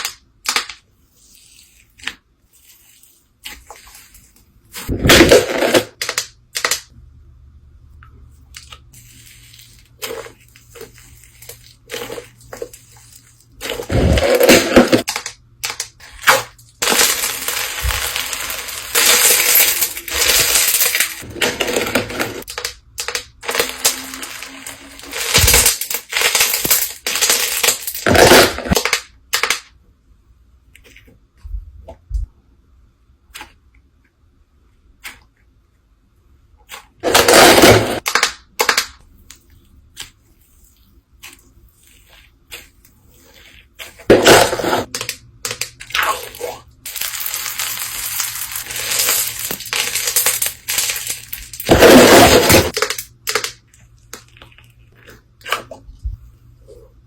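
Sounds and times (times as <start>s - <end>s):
slime popping and crackling: 13.6s - 21.4s, 22.4s - 29.6s, 44.2s - 54.7s.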